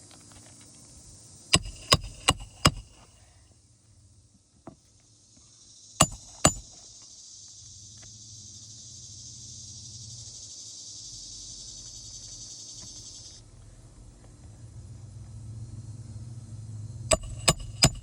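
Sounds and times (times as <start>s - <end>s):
hammer knocks: 1.6s - 3.0s, 6.0s - 6.8s, 17.1s - 18.0s
high-pitched insect buzz: 5.3s - 13.4s.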